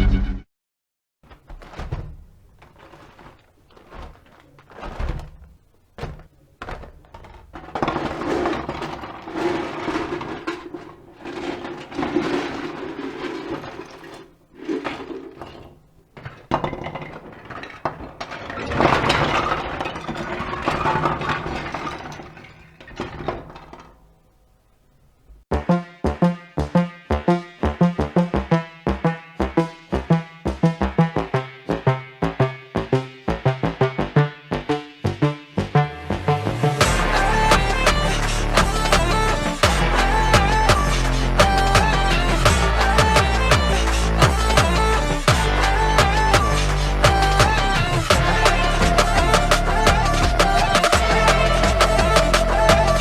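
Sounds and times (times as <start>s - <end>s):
dense clattering noise: 1.2s - 25.4s
knocks crashes and breaking: 1.3s - 25.3s, 36.8s - 53.0s.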